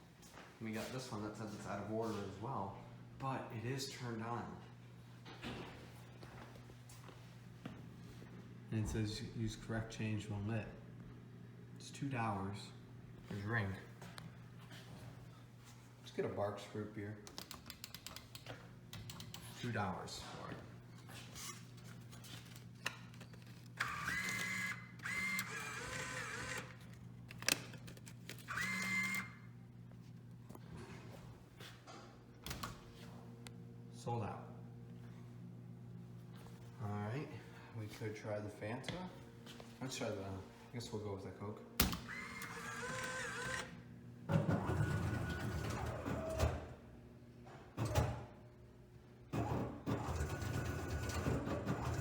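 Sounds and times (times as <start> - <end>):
vending machine mechanism running: 21.1 - 29.6, 41.8 - 47.0, 47.7 - 48.4, 49.3 - 52.0
bill acceptor whirring: 22.7 - 29.6, 41.8 - 46.8, 49.3 - 52.0.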